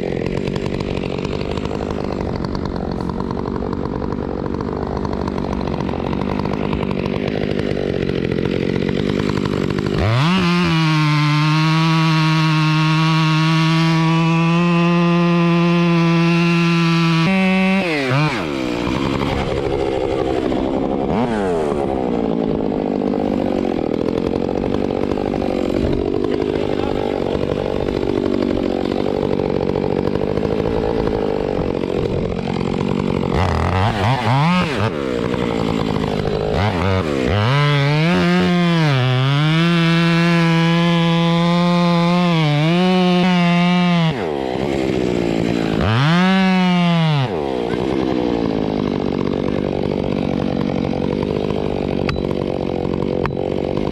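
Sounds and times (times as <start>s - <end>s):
chainsaw cutting wood: 0.0s - 53.9s.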